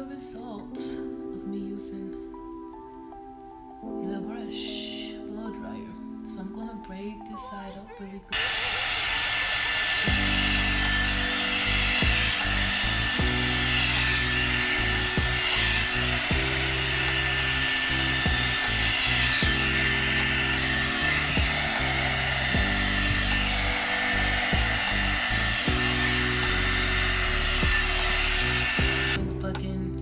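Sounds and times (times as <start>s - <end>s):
blow dryer running: 8.4s - 29.2s
music with a bass line: 10.1s - 30.0s.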